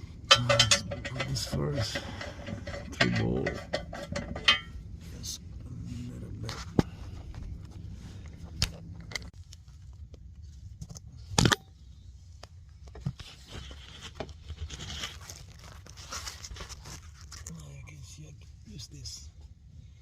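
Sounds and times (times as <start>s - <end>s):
scraping and rustling: 0.1s - 10.9s, 12.8s - 17.6s
metal clank: 0.2s - 4.8s
metal tools clicking and knocking: 0.2s - 4.8s.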